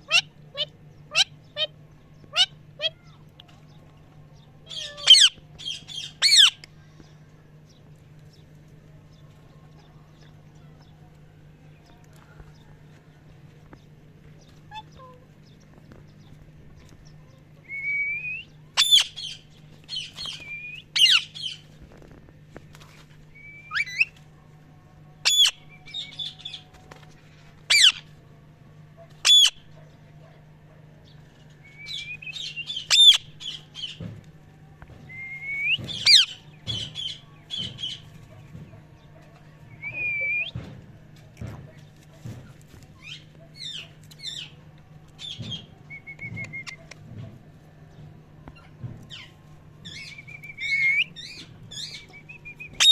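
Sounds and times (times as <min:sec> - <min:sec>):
parrot chirping and squawking: 0:00.0 - 0:01.7, 0:02.3 - 0:03.1, 0:04.7 - 0:06.6, 0:18.8 - 0:19.4, 0:21.0 - 0:21.4, 0:25.2 - 0:25.6, 0:27.7 - 0:28.1, 0:29.2 - 0:29.6, 0:32.7 - 0:33.3, 0:35.9 - 0:36.4.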